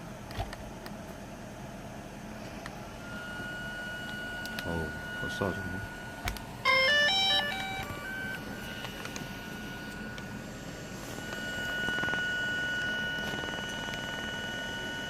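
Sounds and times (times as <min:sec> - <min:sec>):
gimbal motors whining: 0:02.6 - 0:15.0
higher whining tone: 0:02.8 - 0:15.0
electronic chime of descending beeps: 0:06.6 - 0:08.4.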